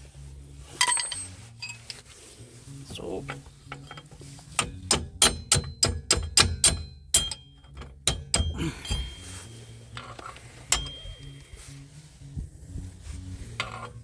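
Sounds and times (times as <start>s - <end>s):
hammer blows on steel: 4.3s - 11.8s.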